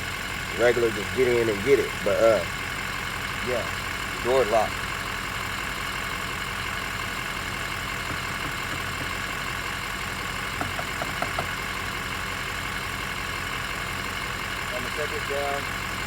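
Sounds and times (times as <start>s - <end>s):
vehicle engine idling: 0.0s - 16.0s.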